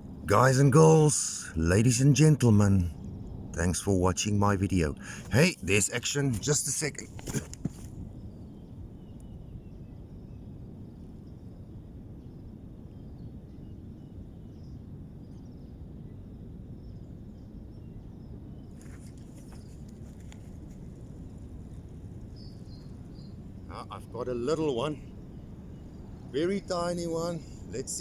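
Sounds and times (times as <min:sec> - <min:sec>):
high chirps of birds or insects: 0:00.0 - 0:07.1, 0:07.7 - 0:28.0
low outdoor rumble: 0:00.0 - 0:12.8, 0:18.4 - 0:28.0
soft clicks and rustles: 0:05.2 - 0:08.1, 0:18.7 - 0:22.0.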